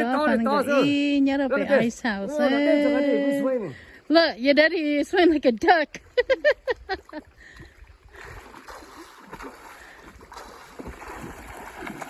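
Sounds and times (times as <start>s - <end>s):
water splashing from swimming: 6.0s - 12.0s.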